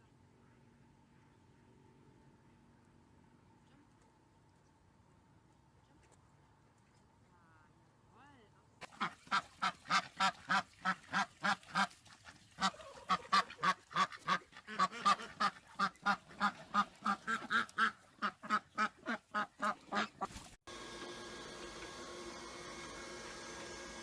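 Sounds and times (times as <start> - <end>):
waterfowl nasal calls: 8.8 - 20.4.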